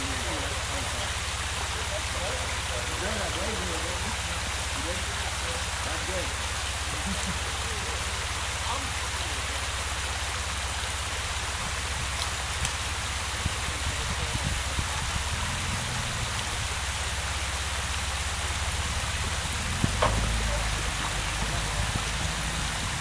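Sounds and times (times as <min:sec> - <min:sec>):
waterfall rushing: 0:00.0 - 0:23.0
low rumble: 0:10.9 - 0:23.0.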